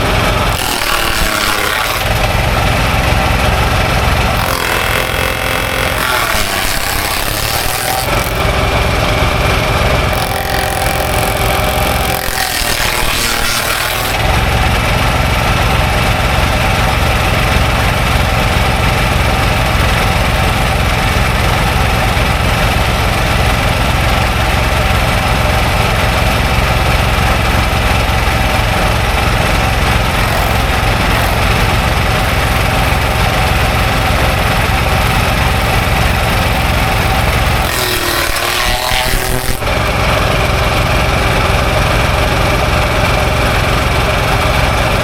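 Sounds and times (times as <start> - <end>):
engine running steadily: 1.8 - 6.1, 8.0 - 12.2, 14.1 - 37.7, 39.3 - 45.0.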